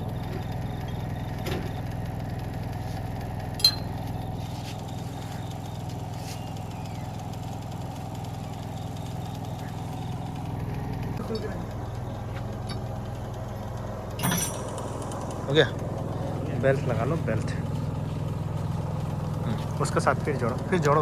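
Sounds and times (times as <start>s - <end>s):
engine idling: 0.0s - 21.0s
sharp metal clink: 3.6s - 3.9s, 14.2s - 15.1s.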